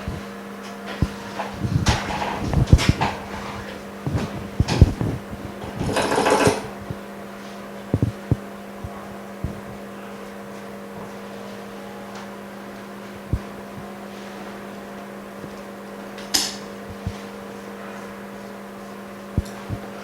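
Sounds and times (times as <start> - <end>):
electrical machine hum: 0.0 - 20.0
knocks and clicks of tools handled: 0.9 - 6.7.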